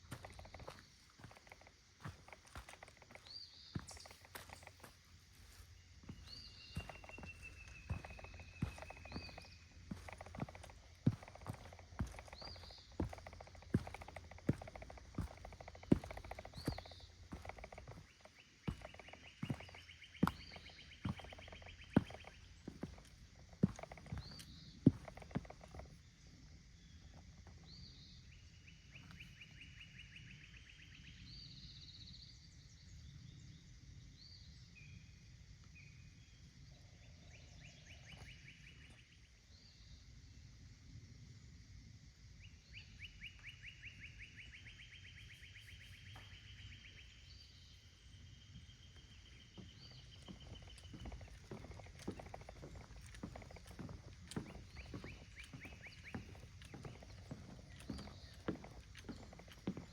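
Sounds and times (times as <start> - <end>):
footsteps on a trail: 0.0 - 26.0, 49.0 - 59.9
faint birdsong: 0.0 - 59.9.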